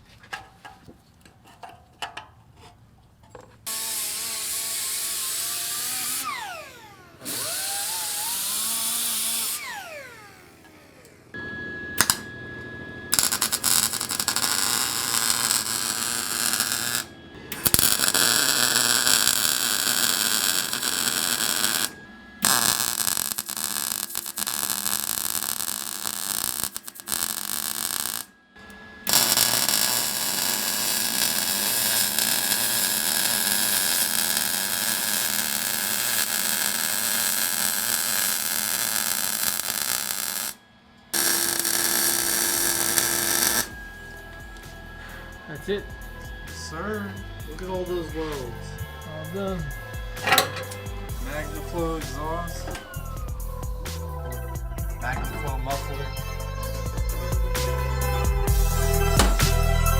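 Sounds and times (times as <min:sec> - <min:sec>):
welder hissing: 0:03.7 - 0:06.5, 0:07.3 - 0:09.8, 0:12.0 - 0:12.3, 0:13.1 - 0:28.3, 0:29.0 - 0:40.6, 0:41.2 - 0:43.9.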